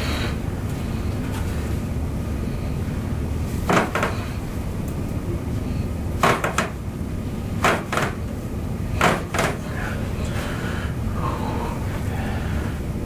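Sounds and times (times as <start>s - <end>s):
steady low rumble: 9.9s - 13.0s.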